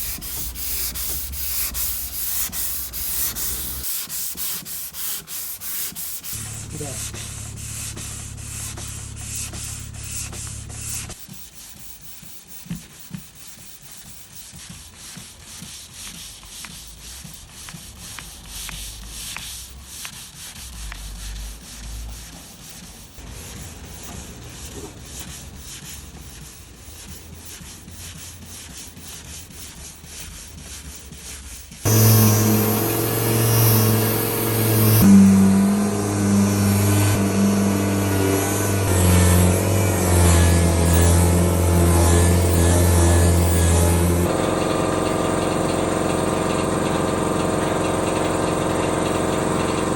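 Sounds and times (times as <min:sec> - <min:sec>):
electric sander motor hum: 0:00.0 - 0:11.0, 0:31.8 - 0:49.9
scratchy sanding rasp: 0:00.0 - 0:49.9.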